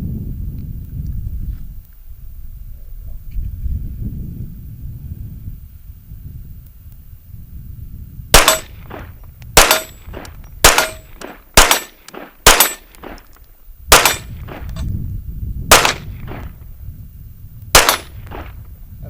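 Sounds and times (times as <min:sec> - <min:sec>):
pistol shots with echo: 0:08.3 - 0:13.3, 0:13.9 - 0:14.8, 0:15.7 - 0:16.6, 0:17.7 - 0:18.6.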